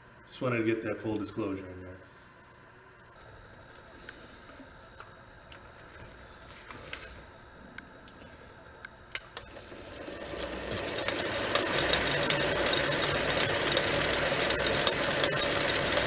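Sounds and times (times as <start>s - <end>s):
metal lathe motor running: 9.0s - 16.0s.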